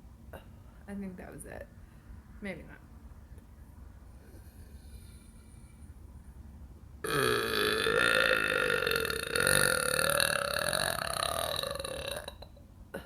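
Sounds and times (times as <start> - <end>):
woman burping: 7.0 - 13.0.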